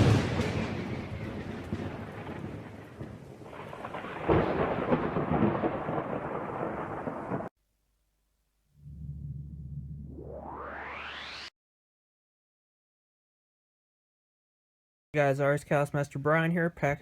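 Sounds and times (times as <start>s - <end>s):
thunder clap rumbling: 0.0s - 7.5s.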